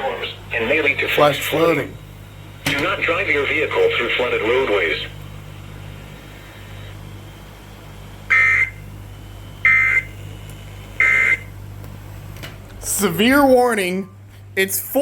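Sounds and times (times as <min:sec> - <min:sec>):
harsh buzzing data bursts: 0:00.0 - 0:11.6
steady low hum: 0:00.0 - 0:15.0.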